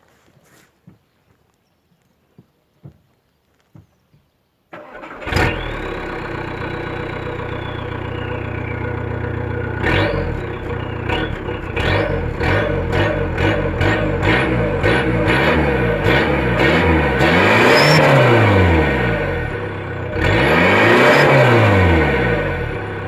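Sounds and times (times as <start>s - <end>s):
diesel engine starting and idling: 4.7s - 23.0s
engine revving: 4.8s - 23.0s
turbo whistle: 17.2s - 18.6s.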